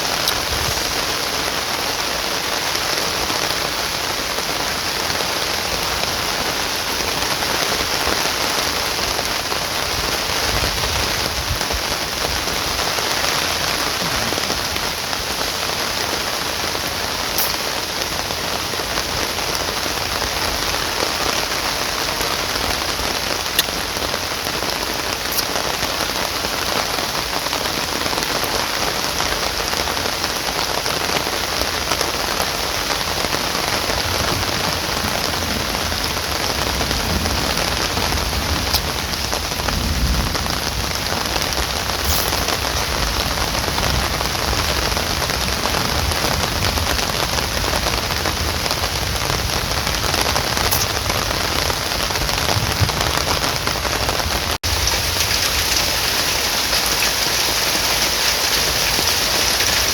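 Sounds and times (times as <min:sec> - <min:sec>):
heavy rain falling: 0:00.0 - 0:59.9
sharp raindrop strikes: 0:17.3 - 0:18.2, 0:41.1 - 0:45.0, 0:54.6 - 0:59.9.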